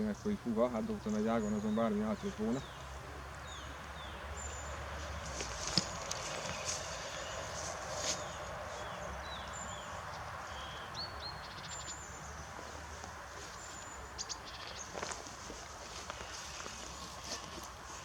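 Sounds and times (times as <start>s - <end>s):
low outdoor background noise: 0.0s - 18.0s.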